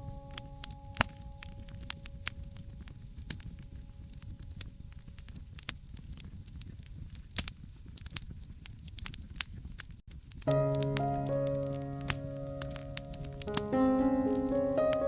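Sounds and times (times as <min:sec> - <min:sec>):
wood fire crackling: 0:04.1 - 0:15.0.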